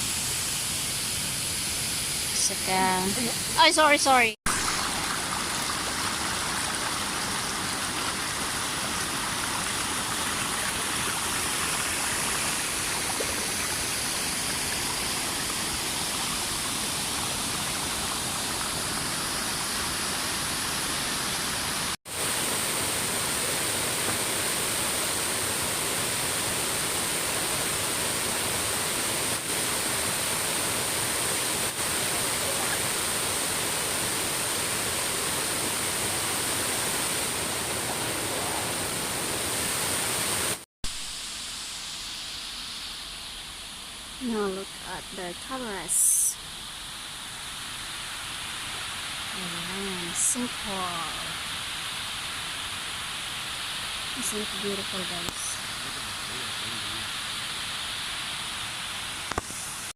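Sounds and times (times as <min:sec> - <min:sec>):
water rushing over waterfall: 0:03.2 - 0:40.6.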